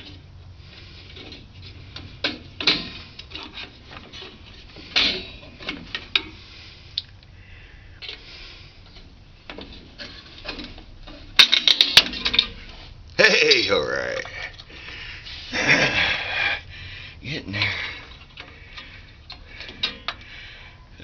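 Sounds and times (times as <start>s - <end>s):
hand tools clinking on metal: 9.6s - 14.6s.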